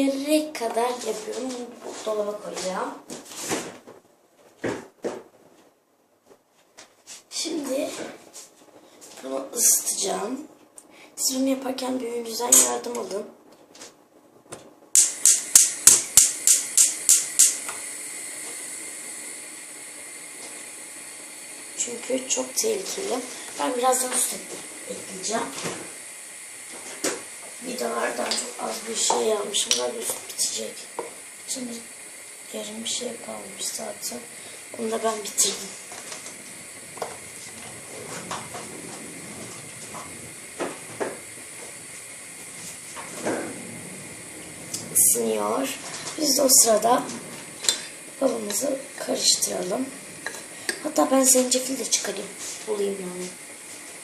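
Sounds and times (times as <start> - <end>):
gas flame hissing: 7.1 - 13.2, 14.9 - 54.0
stove spark igniter clicking: 14.9 - 17.9, 29.1 - 30.2.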